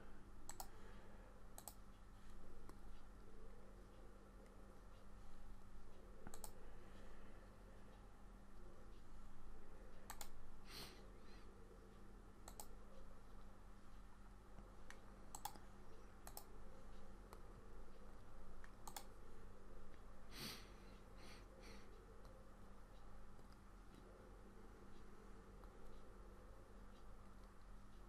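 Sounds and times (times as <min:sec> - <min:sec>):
low electrical hum: 0:00.0 - 0:28.0
computer mouse clicking: 0:00.4 - 0:00.8, 0:01.5 - 0:01.9, 0:06.2 - 0:06.7, 0:10.0 - 0:10.4, 0:12.4 - 0:13.5, 0:14.6 - 0:18.0, 0:18.6 - 0:19.3.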